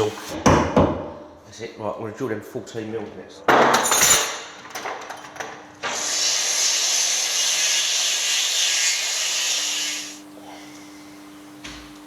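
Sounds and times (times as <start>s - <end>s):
power drill boring into wood: 5.9s - 10.2s.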